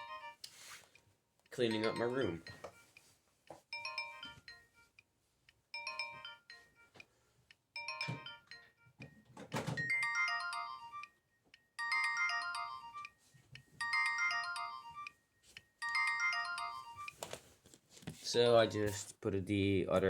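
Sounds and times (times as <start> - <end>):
mobile phone ringtone: 0.0 - 0.8, 1.6 - 3.1, 3.7 - 5.0, 5.8 - 7.0, 7.8 - 9.2, 9.8 - 17.2.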